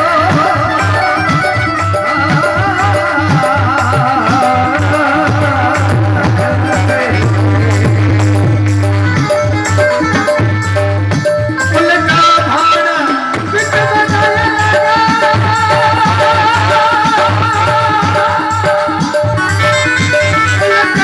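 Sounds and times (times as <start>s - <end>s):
rattling percussion: 0.0s - 21.0s
steady drum beat: 0.0s - 21.0s.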